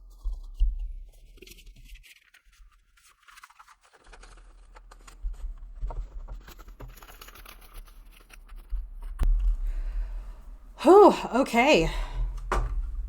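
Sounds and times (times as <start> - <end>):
paper rustling and crinkling: 0.0 - 9.5
dull thumps against a table: 12.4 - 13.0.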